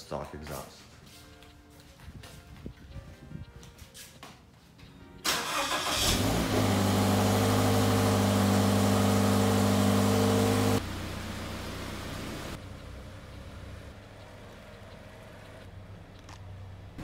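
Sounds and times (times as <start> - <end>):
car engine cranking: 5.2 - 10.8
car engine idling: 5.4 - 17.0.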